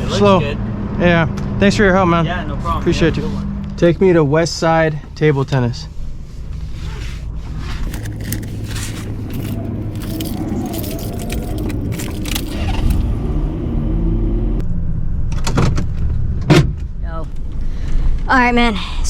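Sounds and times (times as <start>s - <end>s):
car engine and road rumble: 0.0s - 19.0s
clicks and rattles: 7.8s - 13.0s.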